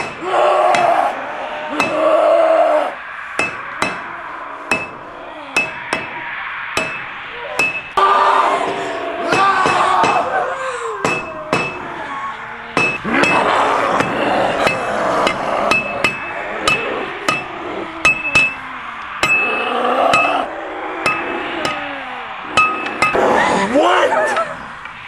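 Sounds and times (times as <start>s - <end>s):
sharp metallic clanks: 0.0s - 1.0s, 3.0s - 8.0s, 12.8s - 23.2s
low sliding tones: 0.0s - 25.0s.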